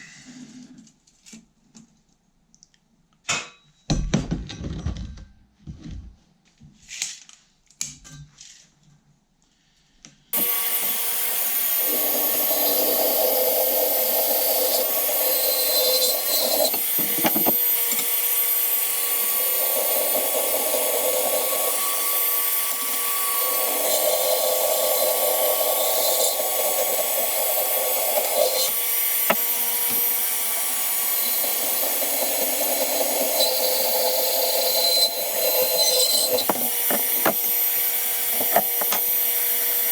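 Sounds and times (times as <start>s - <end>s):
power tool whining: 10.4s - 39.9s.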